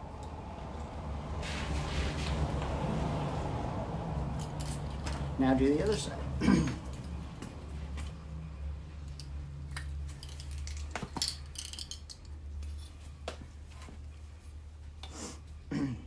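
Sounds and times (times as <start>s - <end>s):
clicks and clinks of small parts: 4.3s - 8.2s, 9.0s - 13.9s.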